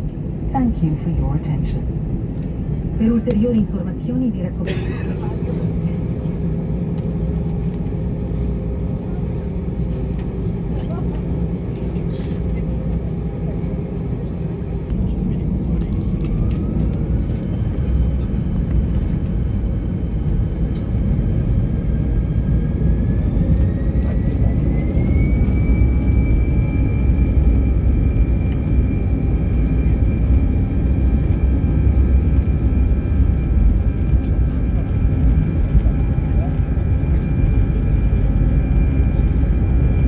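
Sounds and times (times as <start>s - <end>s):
jet engines spooling up: 14.8s - 40.0s.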